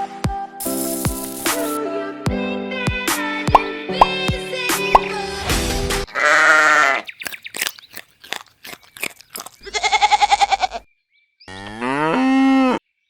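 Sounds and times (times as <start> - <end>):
farm animal bleating: 6.1 - 7.1, 9.4 - 10.9.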